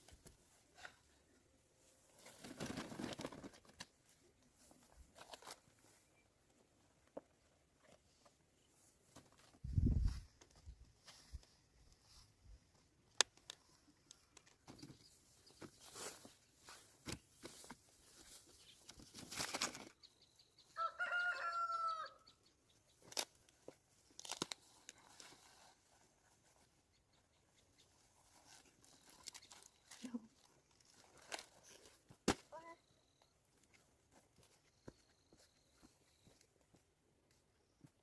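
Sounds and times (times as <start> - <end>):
rustles: 0.0 - 20.2, 22.9 - 38.0
rooster crowing: 20.8 - 22.3.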